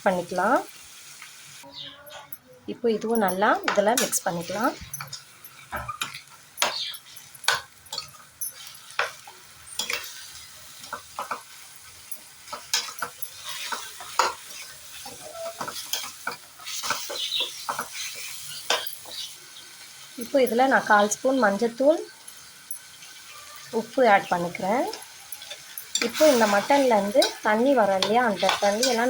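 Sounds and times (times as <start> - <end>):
meat sizzling in oil: 0.0 - 1.8, 3.2 - 29.0
utensil scraping a pan: 25.5 - 29.0.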